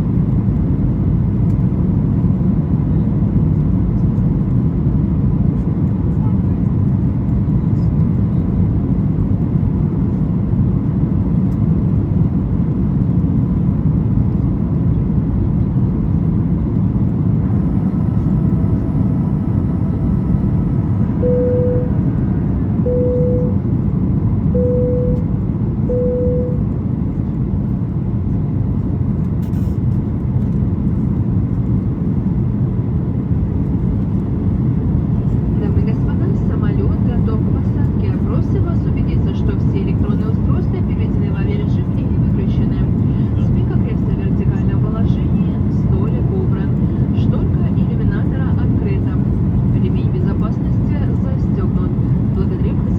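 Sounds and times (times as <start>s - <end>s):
airplane cabin noise: 0.0s - 52.9s
short beeps: 17.6s - 22.1s, 22.8s - 23.6s, 24.5s - 26.6s.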